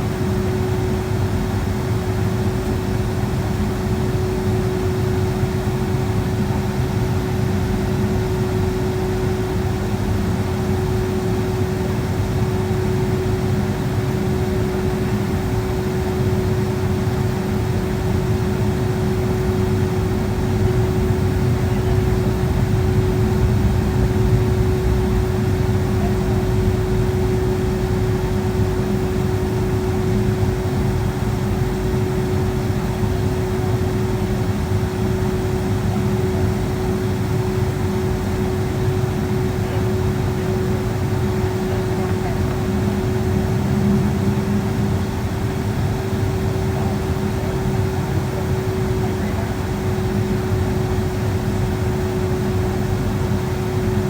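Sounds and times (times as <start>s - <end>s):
airplane cabin engine rush: 0.0s - 54.0s
mid-pitched hum: 0.0s - 54.0s.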